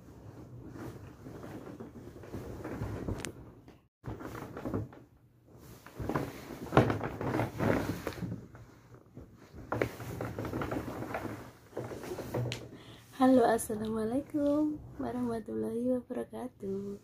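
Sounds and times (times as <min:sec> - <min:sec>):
rustling: 0:00.0 - 0:15.3
knocks of things handled: 0:05.9 - 0:12.8.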